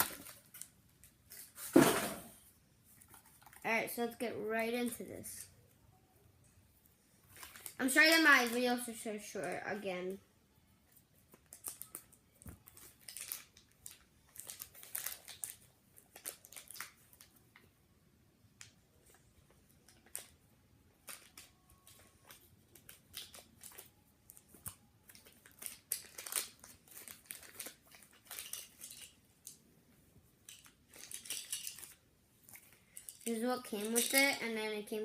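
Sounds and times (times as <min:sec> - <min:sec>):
packaging crinkling and tearing: 0:07.3 - 0:08.7, 0:11.3 - 0:17.3, 0:19.8 - 0:20.4, 0:21.0 - 0:29.6, 0:30.5 - 0:34.2.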